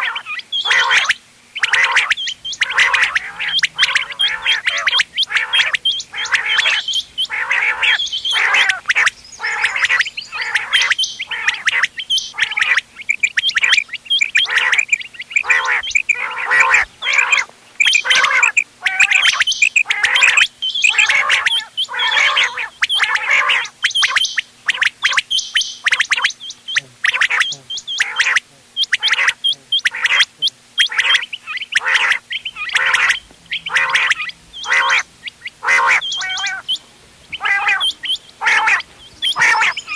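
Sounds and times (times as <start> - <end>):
faint steady hum: 0.0 - 39.9
quails calling: 0.0 - 39.9.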